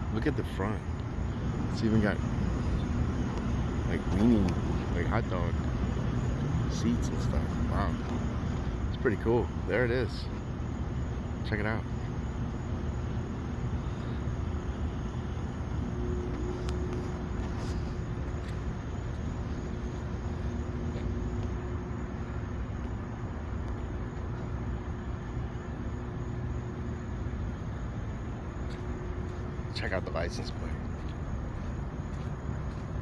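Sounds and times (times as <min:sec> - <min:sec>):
faint steady hum: 0:00.0 - 0:33.0
vehicle road rumble: 0:00.0 - 0:33.0.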